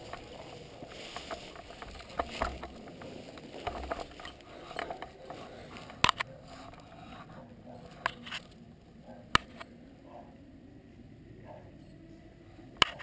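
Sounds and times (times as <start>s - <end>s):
low rustle: 0.0s - 9.0s
sharp snaps: 9.3s - 9.7s.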